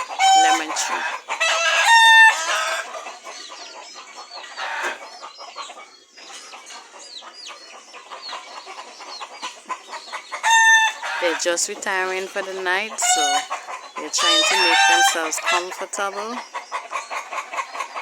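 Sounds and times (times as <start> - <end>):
chicken strident call: 0.0 - 3.3, 8.1 - 11.6, 12.9 - 18.0
chickens clucking: 0.0 - 18.0.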